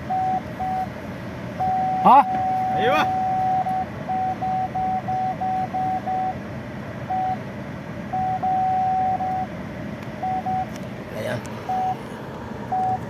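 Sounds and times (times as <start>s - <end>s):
parking sensor warning beeps: 0.0s - 1.0s, 1.6s - 6.4s, 7.0s - 7.5s, 8.1s - 9.5s, 10.2s - 10.8s, 11.6s - 12.0s, 12.7s - 13.0s.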